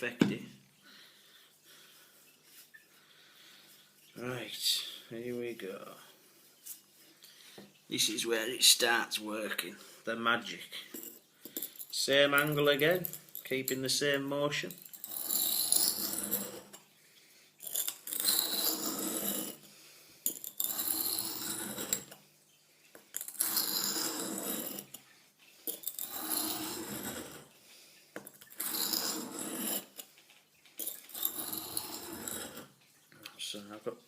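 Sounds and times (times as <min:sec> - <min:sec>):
knife scraping on sharpening stone: 0:14.8 - 0:16.8, 0:17.6 - 0:19.7, 0:20.3 - 0:22.2, 0:23.2 - 0:25.0, 0:25.7 - 0:27.5, 0:28.4 - 0:30.1, 0:30.8 - 0:32.7.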